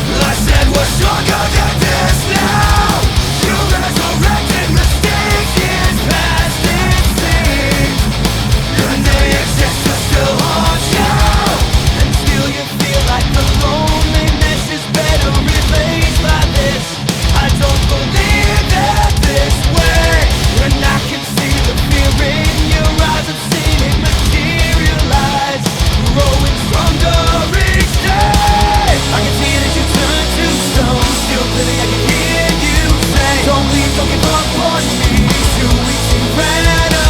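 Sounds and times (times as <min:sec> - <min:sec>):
heavy rock music: 0:00.0 - 0:37.0.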